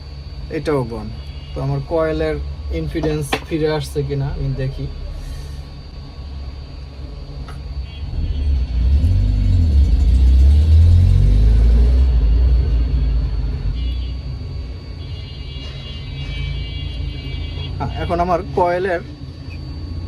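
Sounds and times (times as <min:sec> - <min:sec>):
faint steady high whine: 0:00.0 - 0:20.0
motor vehicle passing rumble: 0:08.1 - 0:13.7.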